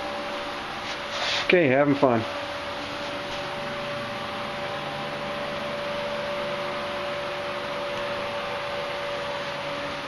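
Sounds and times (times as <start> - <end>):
machine whooshing hiss with hum: 0.0 - 10.0.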